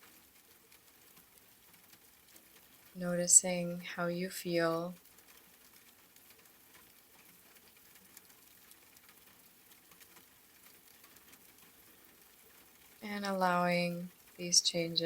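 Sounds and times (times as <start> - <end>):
faint rain patter: 0.0 - 15.0.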